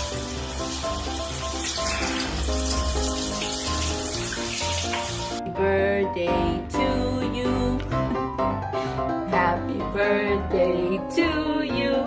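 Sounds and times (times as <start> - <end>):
running water hiss: 0.0 - 5.4
simple melody music: 0.0 - 12.0.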